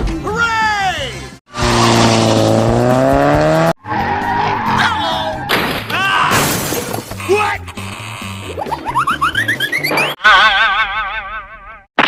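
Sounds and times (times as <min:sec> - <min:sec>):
car engine and tyre skid: 0:01.6 - 0:05.5.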